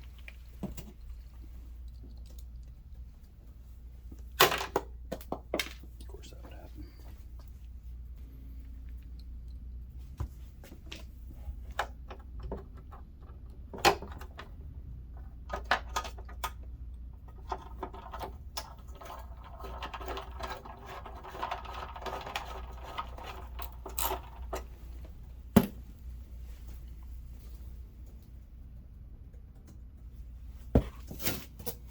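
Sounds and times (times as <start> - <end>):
plastic parts rattling: 17.3 - 24.7.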